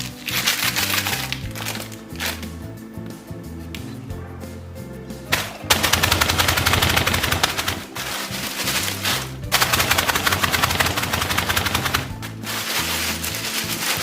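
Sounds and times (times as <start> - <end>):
chips and crackers being crushed: 0.0 - 2.6, 5.4 - 14.0.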